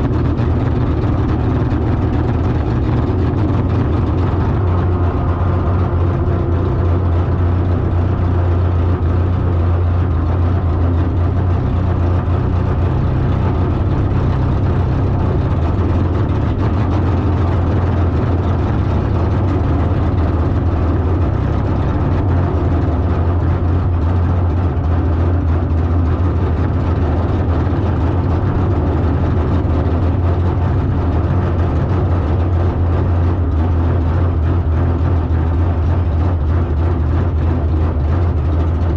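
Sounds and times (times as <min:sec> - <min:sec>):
car engine running steadily: 0:00.0 - 0:38.9.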